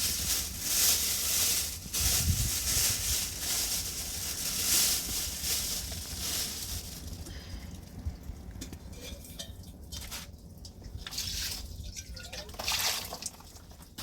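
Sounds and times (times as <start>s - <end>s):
loud rustling hiss: 0.0s - 7.3s.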